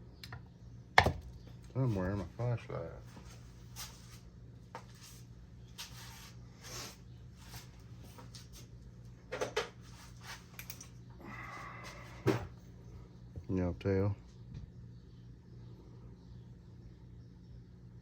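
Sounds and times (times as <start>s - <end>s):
steady low hum: 0.0s - 18.0s
tools handled on a workbench: 9.3s - 11.0s.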